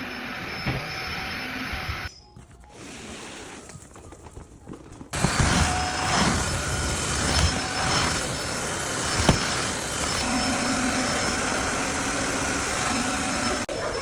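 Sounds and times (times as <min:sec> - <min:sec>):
vacuum motor running: 0:05.2 - 0:13.7.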